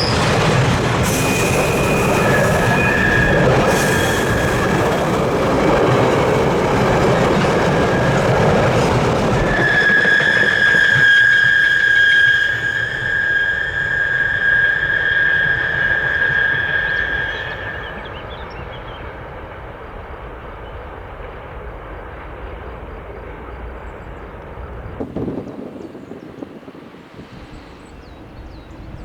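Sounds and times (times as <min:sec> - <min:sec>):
train wheels squealing: 0:00.0 - 0:19.2
train rumble: 0:00.0 - 0:29.0.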